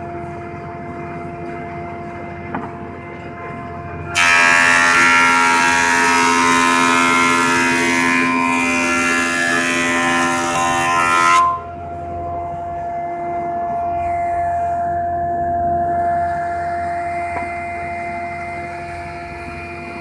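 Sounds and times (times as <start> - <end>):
board cutting noise with whine: 0.0 - 20.0
planer thicknesser humming: 0.3 - 13.8.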